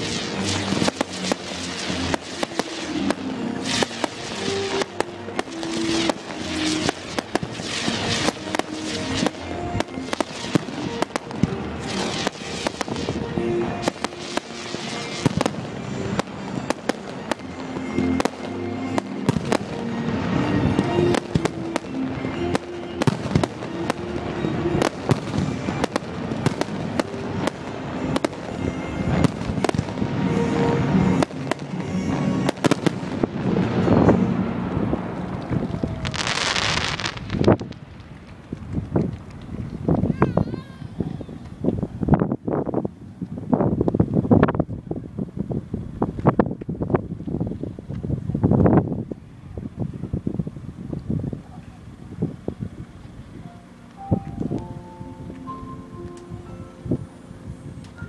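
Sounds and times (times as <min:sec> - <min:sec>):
music playing: 0:00.0 - 0:37.6, 0:53.4 - 0:58.0
fireworks bursts and crackles: 0:00.0 - 0:53.2.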